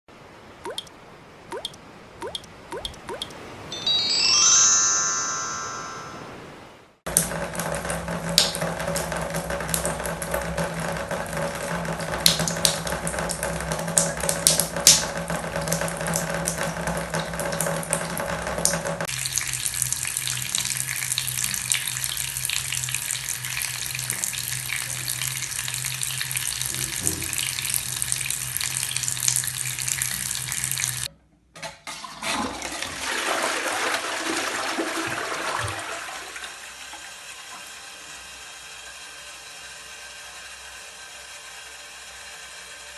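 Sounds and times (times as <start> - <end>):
tap water splashing into sink: 7.1 - 22.7, 26.0 - 31.1, 31.9 - 37.6.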